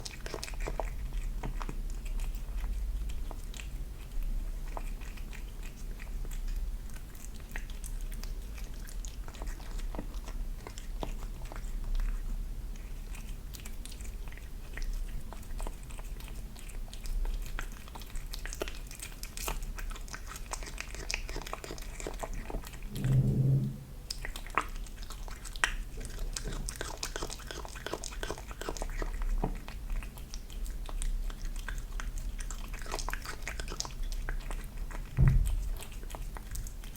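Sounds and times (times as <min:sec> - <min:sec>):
kitten chewing: 0:00.0 - 0:22.5, 0:26.0 - 0:36.9
steady low hum: 0:22.7 - 0:24.4
brief low-pitched sound: 0:22.8 - 0:24.2.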